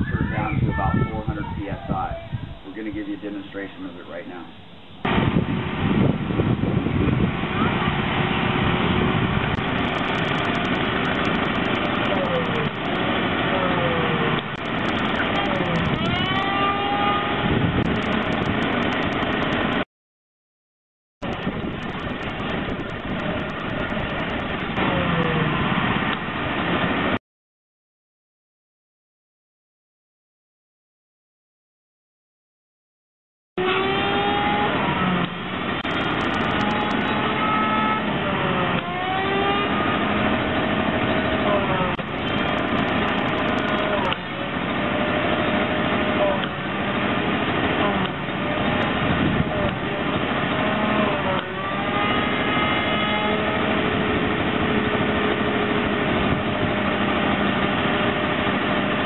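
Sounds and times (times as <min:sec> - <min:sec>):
whine: 0:00.0 - 0:19.8, 0:21.2 - 0:27.2, 0:33.6 - 0:59.0
rapid ticking: 0:09.6 - 0:13.1, 0:14.4 - 0:16.1, 0:17.8 - 0:19.8, 0:21.2 - 0:24.8, 0:35.8 - 0:37.0, 0:42.0 - 0:44.2.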